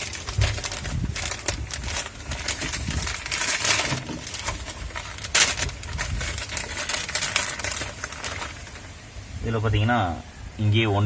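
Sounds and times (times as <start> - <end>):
wind rumble on microphone: 0.0 - 3.8, 4.6 - 6.9
hands handling a cable: 0.0 - 8.9.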